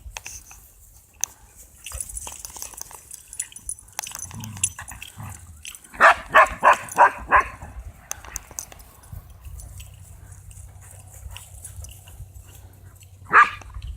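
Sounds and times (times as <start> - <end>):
dogs barking: 4.5 - 8.5, 10.1 - 13.8
faint clicks: 8.0 - 12.1.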